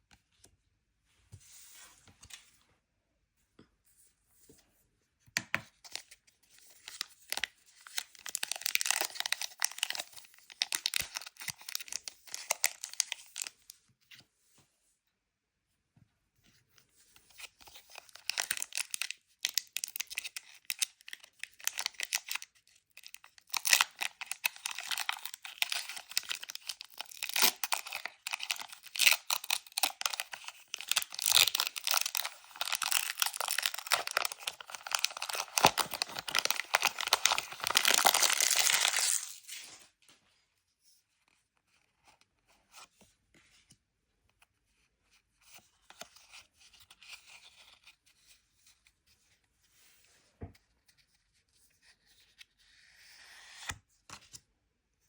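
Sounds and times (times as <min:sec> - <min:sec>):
plastic wrapping tearing and crinkling: 0:07.4 - 0:13.5, 0:18.0 - 0:22.4, 0:23.0 - 0:39.8.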